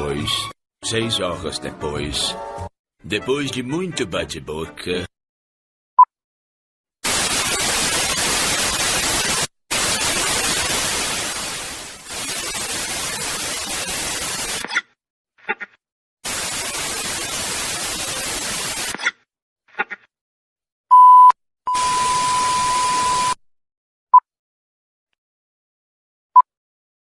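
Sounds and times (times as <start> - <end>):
white noise static: 7.0 - 14.6, 16.2 - 18.9.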